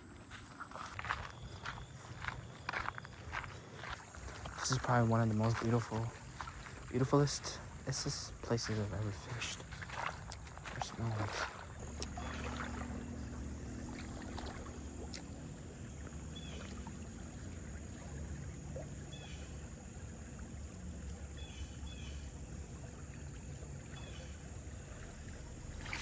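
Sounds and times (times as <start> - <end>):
wind and water rumble: 0.6 - 26.0.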